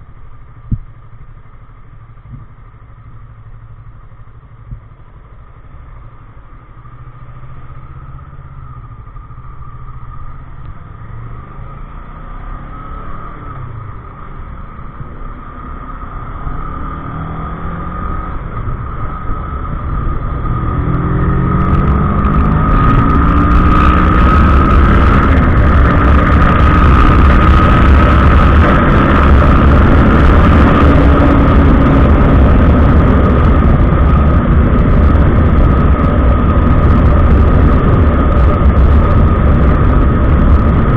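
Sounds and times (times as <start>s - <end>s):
motorcycle engine accelerating: 0.0s - 40.9s
wind noise on microphone: 12.6s - 40.9s.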